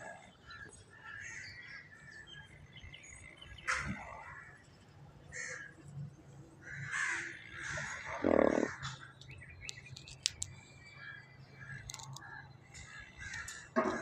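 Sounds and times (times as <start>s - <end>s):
harsh animal calls: 6.8s - 9.0s.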